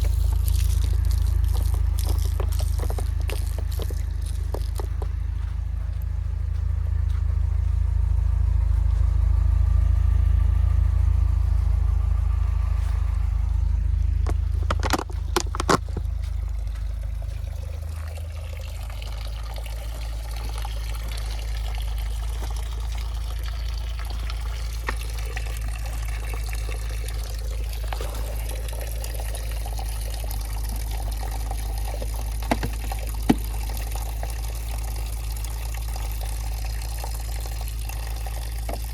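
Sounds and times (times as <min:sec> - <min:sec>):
slush hissing under wheels: 0:00.0 - 0:05.1, 0:16.6 - 0:38.9
engine and tyres droning: 0:00.0 - 0:38.9.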